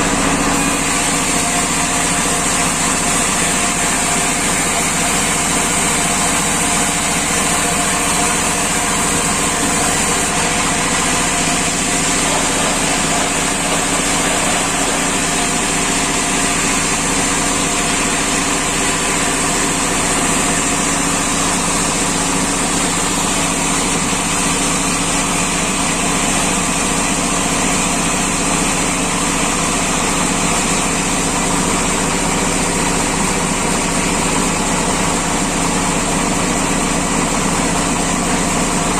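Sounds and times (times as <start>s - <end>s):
wood-slicing machine drone: 0.0s - 38.9s.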